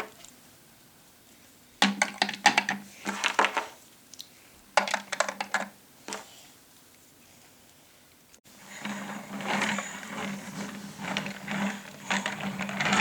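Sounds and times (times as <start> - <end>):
plastic toys clicking and clattering: 1.8 - 3.8, 4.8 - 6.3, 8.6 - 13.0.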